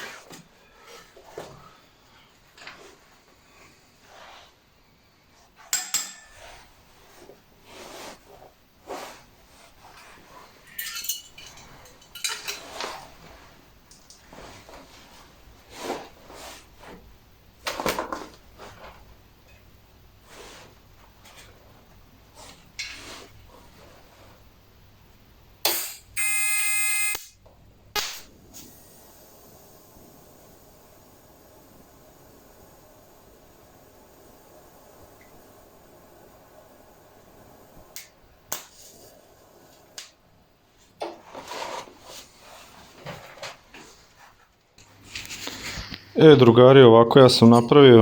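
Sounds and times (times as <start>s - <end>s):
steel parts and tools clinking: 10.6s - 12.7s
loud steady buzzing tone: 26.2s - 27.4s.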